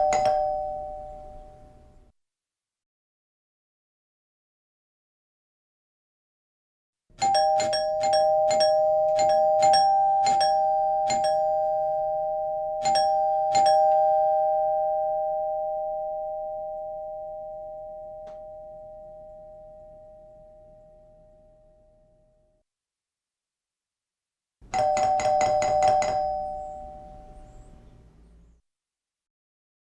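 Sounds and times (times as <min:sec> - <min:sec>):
two-tone doorbell chime: 0:00.0 - 0:02.0, 0:07.2 - 0:22.3, 0:24.7 - 0:27.8.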